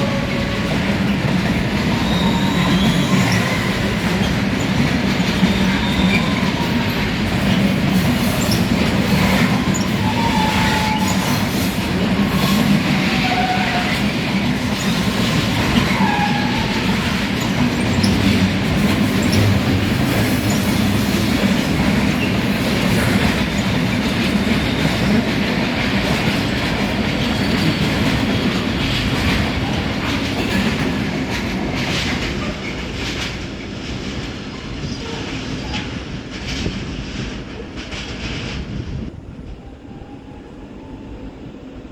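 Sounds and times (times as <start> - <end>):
clickety-clack of wheels: 0.0 - 39.1
train rumble: 0.0 - 41.9
train wheels squealing: 1.8 - 25.3, 26.2 - 33.0.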